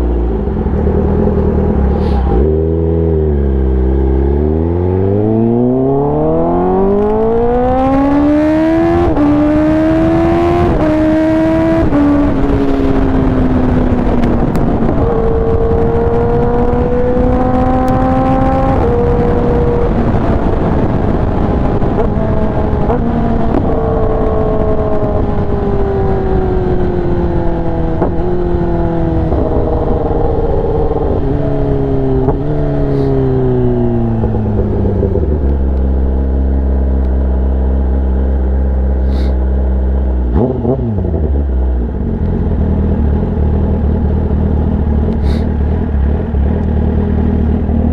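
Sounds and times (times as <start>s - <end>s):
motorcycle engine revving: 0.0s - 47.9s
downshift throttle blips: 30.8s - 47.9s.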